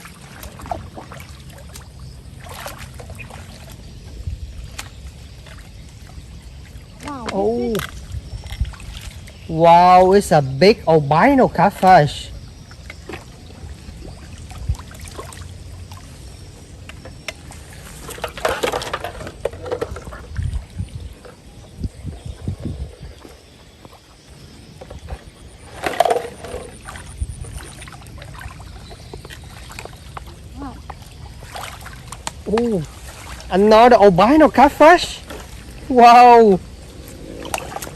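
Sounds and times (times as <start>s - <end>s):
water splashing and sloshing: 0.0s - 37.9s
low rumble: 36.6s - 37.9s.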